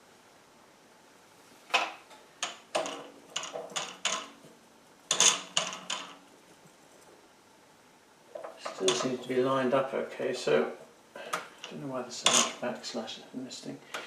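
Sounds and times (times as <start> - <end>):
metal parts clinking: 5.1 - 6.2.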